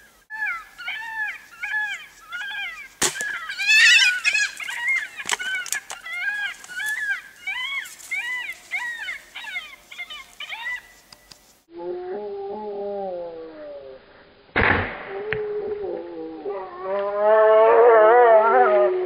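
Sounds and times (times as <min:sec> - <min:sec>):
yelping animal calls: 0:00.3 - 0:10.9
sharp crack: 0:03.0 - 0:04.6, 0:14.5 - 0:15.4.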